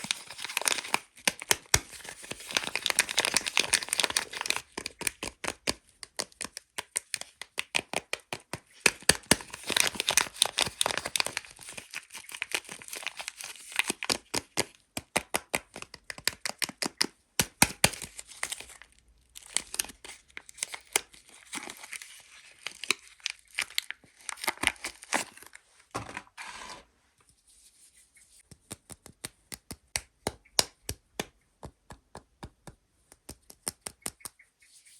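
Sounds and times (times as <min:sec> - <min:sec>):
wrappers tearing and crinkling: 0:00.0 - 0:05.1, 0:09.0 - 0:14.3, 0:17.8 - 0:25.6.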